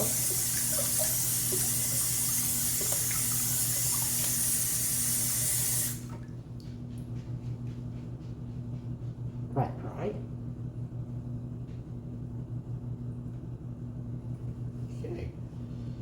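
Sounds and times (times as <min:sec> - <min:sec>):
tap water running into sink: 0:00.0 - 0:06.4
water drips: 0:00.0 - 0:06.7
steady low hum: 0:00.0 - 0:16.0.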